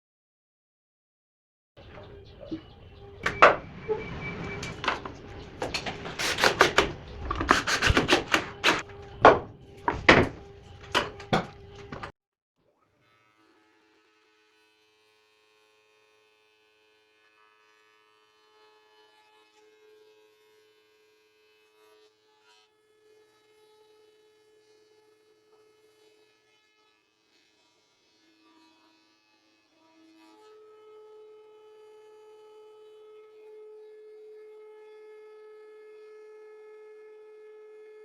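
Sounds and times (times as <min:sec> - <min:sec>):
machine hum: 0:01.8 - 0:12.1
wooden knocks and clatter: 0:03.2 - 0:12.1.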